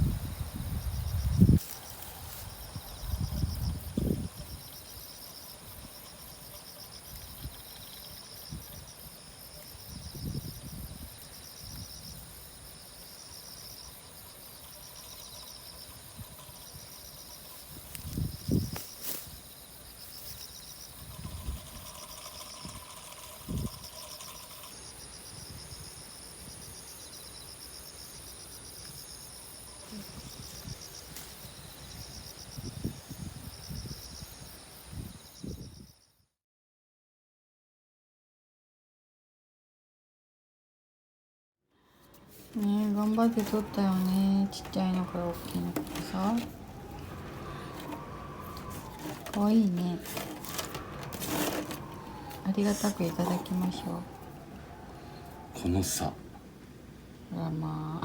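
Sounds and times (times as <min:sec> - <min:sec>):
pulsing insect call: 0:00.0 - 0:36.0, 0:42.5 - 0:58.0
insect high drone: 0:00.0 - 0:36.2, 0:42.4 - 0:58.0.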